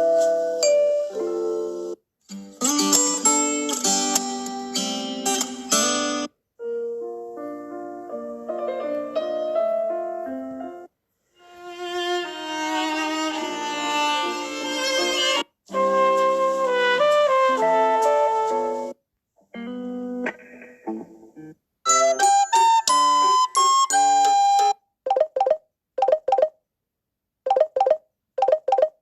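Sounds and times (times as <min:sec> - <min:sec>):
ringtone melodies: 0:00.0 - 0:02.0, 0:21.9 - 0:26.6, 0:27.5 - 0:29.0.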